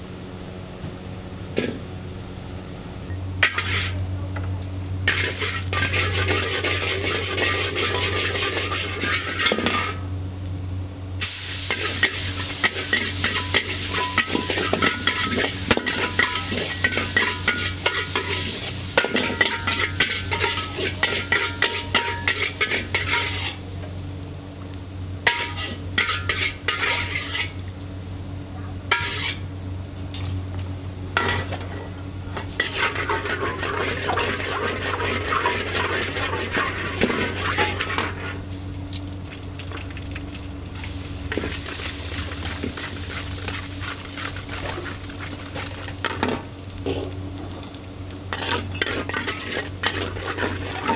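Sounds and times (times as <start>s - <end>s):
steady low hum: 0.0s - 50.9s
metal spatula scraping a wok: 3.4s - 4.0s, 5.1s - 10.0s, 11.2s - 24.6s, 25.2s - 27.7s, 28.9s - 29.5s, 31.1s - 38.3s, 42.2s - 45.9s, 48.3s - 50.9s
loud sizzling: 3.4s - 29.8s, 31.0s - 39.6s, 40.6s - 50.9s.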